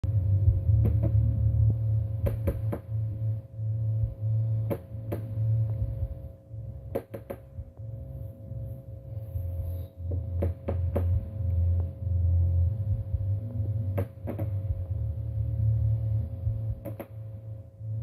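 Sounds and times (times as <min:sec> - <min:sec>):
low electrical hum: 0:00.0 - 0:18.0.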